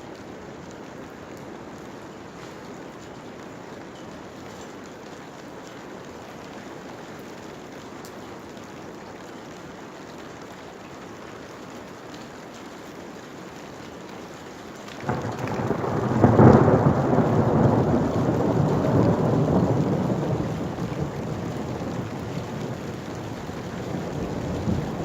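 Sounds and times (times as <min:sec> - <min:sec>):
steady rain: 0:00.0 - 0:25.0
thunderclap and rumble: 0:15.0 - 0:25.0.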